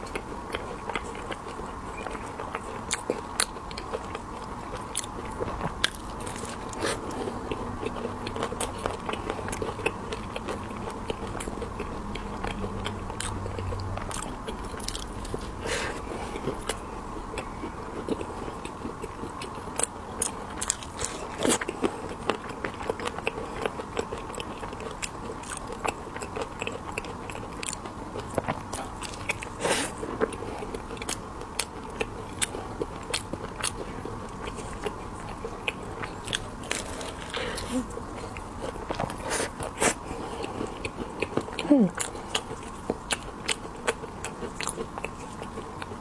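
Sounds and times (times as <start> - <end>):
chewing: 0.0 - 46.0.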